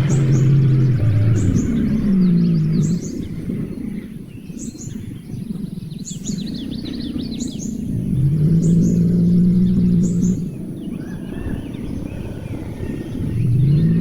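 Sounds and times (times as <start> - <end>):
rough low rumble: 0.0 - 4.2, 7.8 - 14.0
low drone: 0.0 - 4.4
bird chirps: 0.0 - 5.0.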